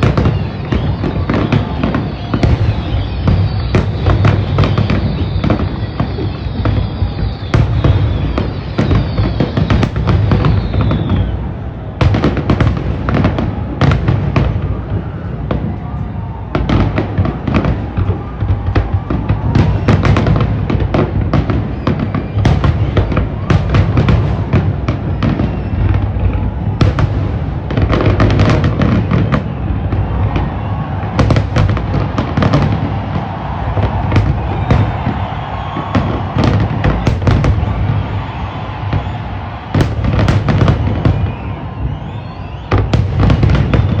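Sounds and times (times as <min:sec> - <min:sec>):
fireworks bangs and crackles: 0:00.0 - 0:44.0.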